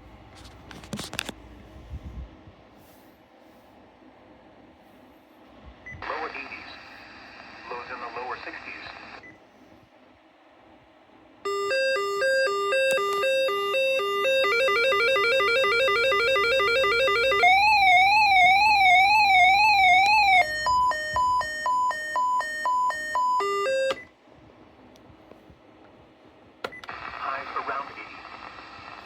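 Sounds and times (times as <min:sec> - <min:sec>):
electronic alarm tones: 0:11.5 - 0:24.1.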